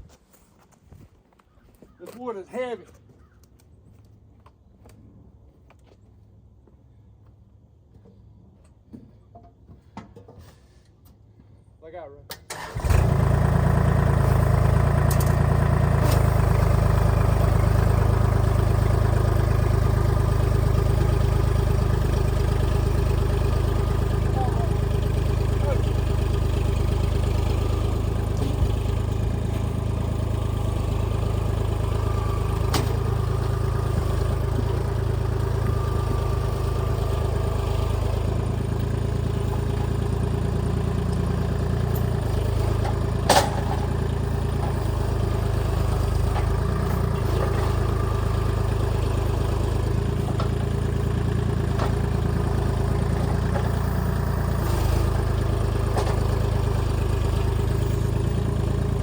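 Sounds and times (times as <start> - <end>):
tractor diesel engine running: 12.5 - 59.0.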